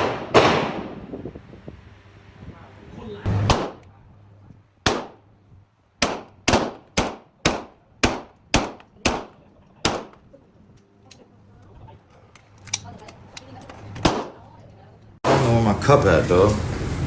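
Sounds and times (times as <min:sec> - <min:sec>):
pistol shots: 0:00.0 - 0:01.0, 0:03.3 - 0:03.9, 0:04.8 - 0:05.2, 0:06.0 - 0:10.2, 0:14.0 - 0:14.4.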